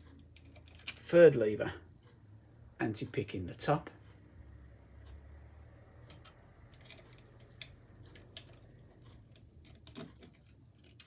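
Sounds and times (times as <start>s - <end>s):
small metal parts clicking: 0.4s - 1.1s, 6.0s - 11.0s.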